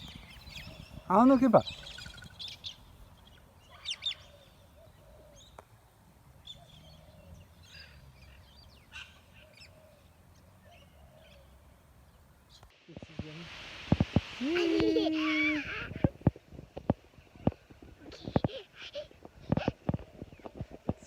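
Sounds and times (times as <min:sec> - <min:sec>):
wild birds chirping: 0:00.0 - 0:12.7.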